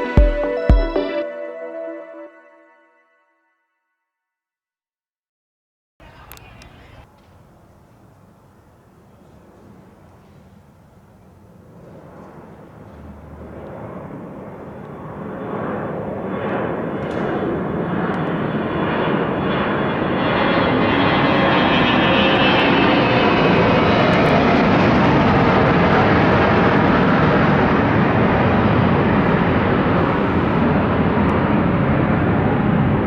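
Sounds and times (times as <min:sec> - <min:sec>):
jet engines at takeoff power: 0:06.0 - 0:33.0.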